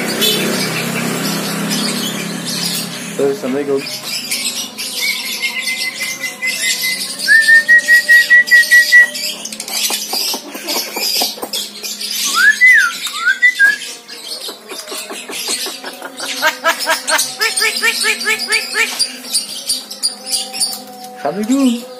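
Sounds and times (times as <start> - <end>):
myna harsh chatter: 14.0 - 19.5.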